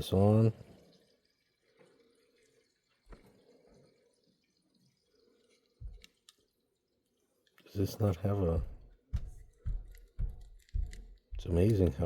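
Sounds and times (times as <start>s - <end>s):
faint clicks of small parts: 1.7s - 12.0s
soft knock: 8.6s - 11.6s.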